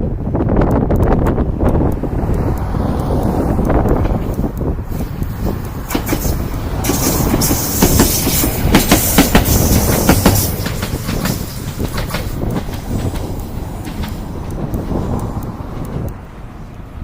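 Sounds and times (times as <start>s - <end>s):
train wheels clacking over joints: 3.9s - 16.2s
high hiss: 4.9s - 15.1s.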